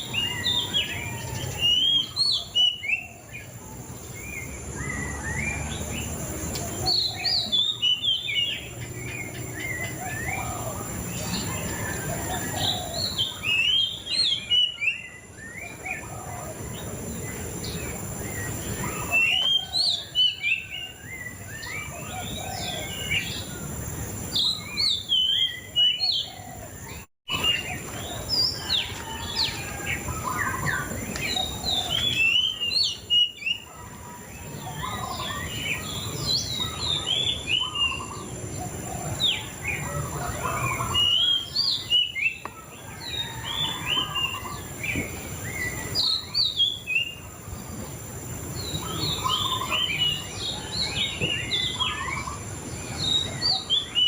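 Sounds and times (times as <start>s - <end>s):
songbird singing chirps and whistles: 0.0s - 47.6s.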